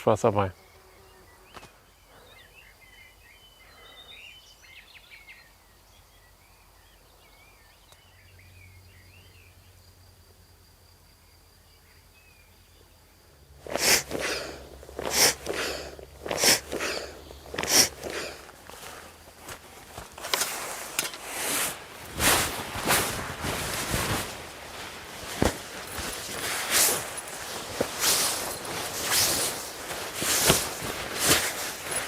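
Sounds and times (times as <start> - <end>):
birds chirping: 0.0 - 9.9, 11.6 - 32.0
rustling footsteps: 13.6 - 32.0.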